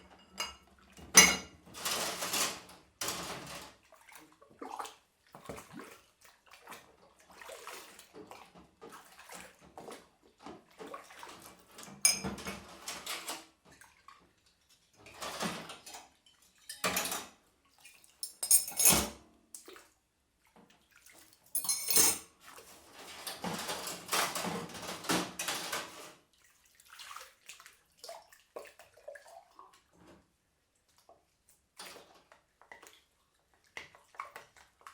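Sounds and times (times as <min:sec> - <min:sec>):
plates and cutlery clinking: 0:00.0 - 0:02.6, 0:12.1 - 0:12.6, 0:16.7 - 0:17.3, 0:18.2 - 0:19.2, 0:21.6 - 0:22.3.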